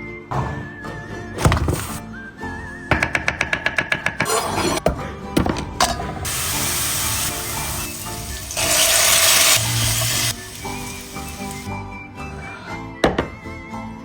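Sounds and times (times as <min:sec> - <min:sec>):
food sizzling in a hot pan: 0:06.3 - 0:11.7.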